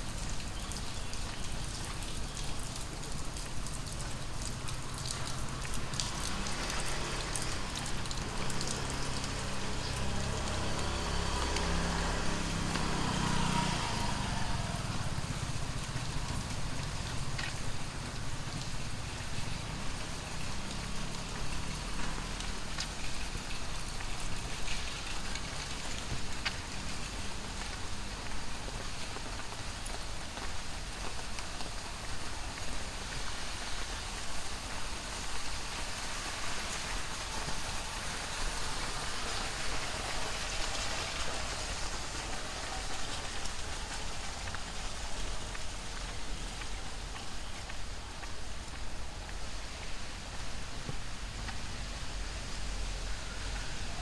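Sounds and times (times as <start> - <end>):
heavy rain pattering: 0.0 - 54.0
sharp drips: 0.1 - 53.9
vehicle engine hum: 4.7 - 54.0.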